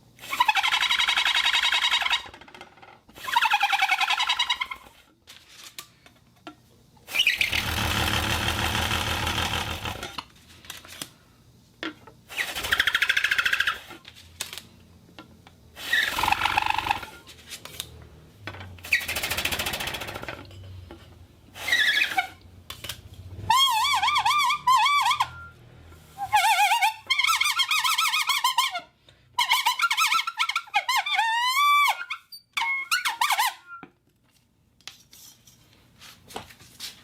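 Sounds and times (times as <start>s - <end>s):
homemade whistle blasts with buzzing: 7.1s - 8.1s, 23.4s - 25.6s, 31.0s - 33.8s.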